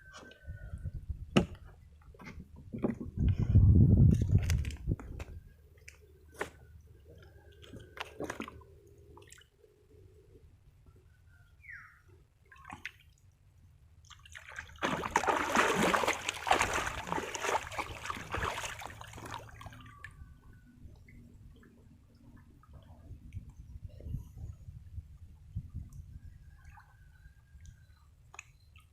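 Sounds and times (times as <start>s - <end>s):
water dripping and sloshing: 7.1s - 9.6s, 12.4s - 13.4s, 14.0s - 20.2s
loud water splashing: 14.5s - 19.8s.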